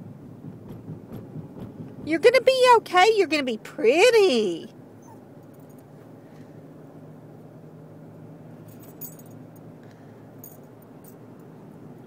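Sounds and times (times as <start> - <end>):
car cabin road hum: 0.0 - 4.7
light metallic jingle: 5.4 - 5.9, 8.6 - 9.7, 10.4 - 11.6.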